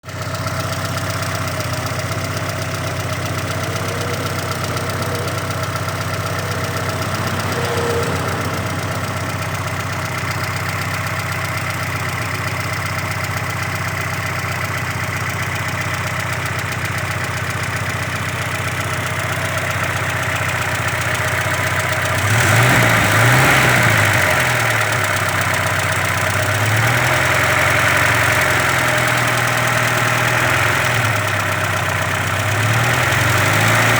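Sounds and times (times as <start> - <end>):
car engine idling and revving: 0.0 - 33.9
engine knock: 0.0 - 33.9.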